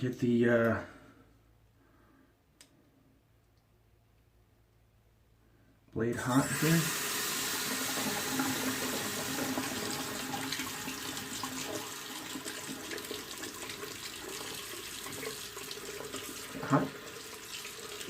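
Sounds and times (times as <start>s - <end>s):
tap water running into sink: 6.2s - 18.0s.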